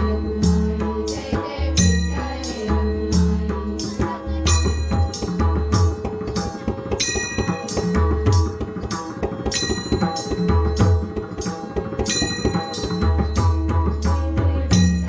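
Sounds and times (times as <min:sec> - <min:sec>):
ringing metallic strike: 0:04.5 - 0:14.0, 0:14.7 - 0:15.0.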